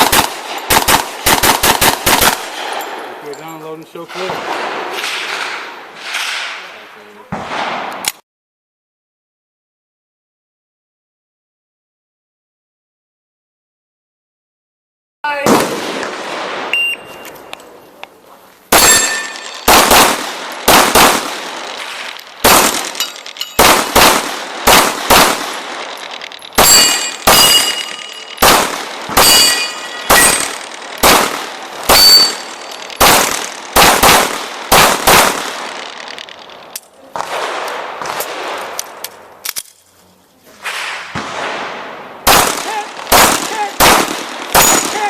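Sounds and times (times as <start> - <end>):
pistol shots: 0.0 - 3.1, 4.1 - 6.7, 7.3 - 8.1, 18.7 - 36.2, 37.2 - 39.0, 40.6 - 45.0
faint echoing shots: 0.0 - 3.2, 4.0 - 8.1, 18.7 - 39.2, 40.6 - 45.0
steel targets clanging: 18.7 - 19.7, 22.8 - 23.6, 26.0 - 28.4, 29.2 - 30.8, 31.8 - 33.0.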